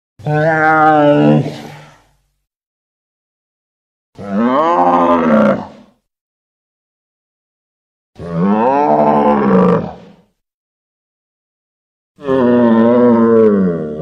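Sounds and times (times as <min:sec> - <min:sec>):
monster roar: 0:00.2 - 0:02.1, 0:04.2 - 0:05.9, 0:08.2 - 0:10.2, 0:12.2 - 0:14.0.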